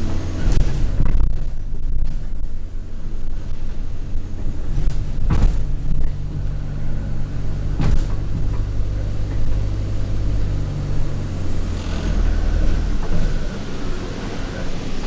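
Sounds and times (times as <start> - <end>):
bus body rattling: 0.0 - 15.0
bus engine drone: 0.0 - 15.0
sharp knocks: 4.8 - 6.1, 7.8 - 8.7.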